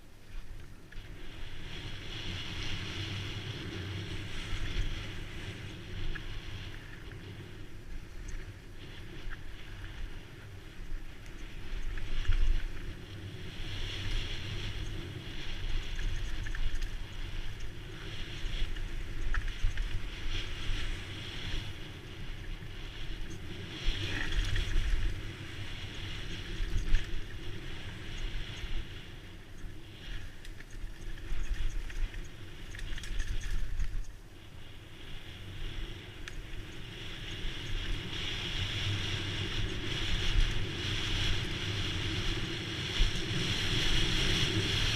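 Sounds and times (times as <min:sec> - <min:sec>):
mountain bike rumble and rattle: 0:00.0 - 0:44.9
wind buffeting microphone: 0:00.0 - 0:44.9.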